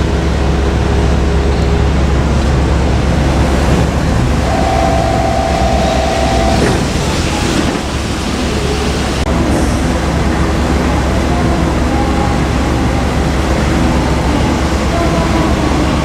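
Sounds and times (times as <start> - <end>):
electric train passing: 0.0 - 16.0
steady tone: 3.0 - 9.2.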